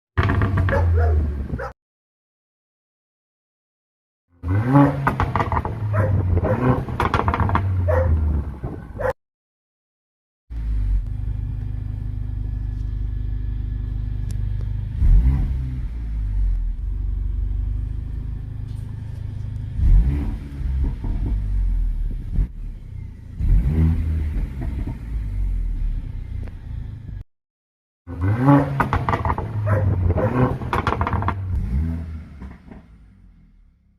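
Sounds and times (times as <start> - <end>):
engine revving: 0.2 - 1.7, 4.3 - 9.1, 10.5 - 27.2, 28.1 - 33.8
exhaust crackling and popping: 0.2 - 1.7, 4.5 - 8.9, 10.5 - 15.4, 16.4 - 22.7, 23.4 - 27.2, 28.2 - 33.1
car engine idling with deep rumble: 10.5 - 27.2.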